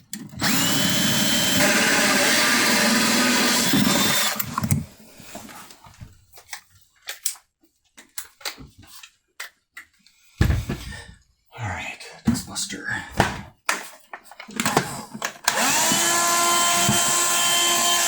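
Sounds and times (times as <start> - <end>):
electric drill running: 0.4 - 4.6, 15.4 - 18.0
loud thump: 10.4 - 11.2.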